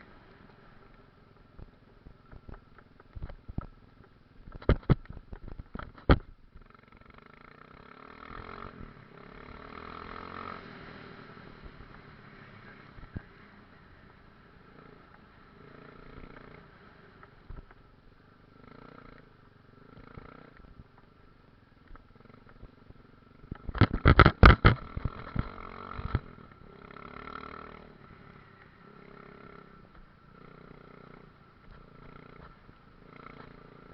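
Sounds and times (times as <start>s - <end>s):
motorcycle engine running: 0.0s - 33.9s
sharp knocks and clatter: 4.4s - 6.3s, 23.5s - 26.3s.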